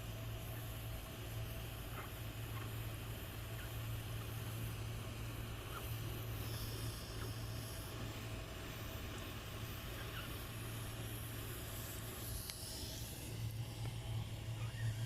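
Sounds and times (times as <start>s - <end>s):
constant hiss: 0.0s - 15.0s
low mechanical hum: 0.0s - 15.0s
faint ticks: 12.3s - 12.7s.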